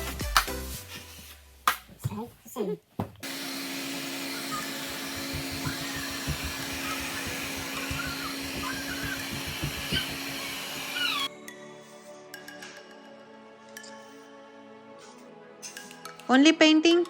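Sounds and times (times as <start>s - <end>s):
small electric fan motor humming: 3.2s - 11.3s.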